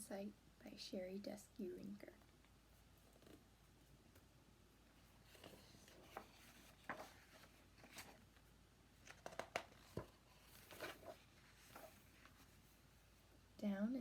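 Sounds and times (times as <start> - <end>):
book pages turning: 5.1 - 8.4, 9.0 - 12.7.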